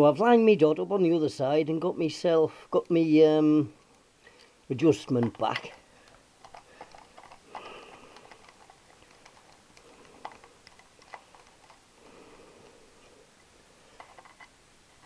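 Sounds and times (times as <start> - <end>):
small tools clicking and tapping: 5.2 - 11.8.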